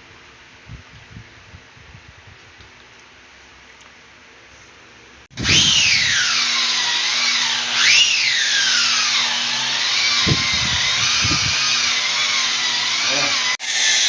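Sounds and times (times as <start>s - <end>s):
rotary tool motor whine: 5.4s - 14.0s.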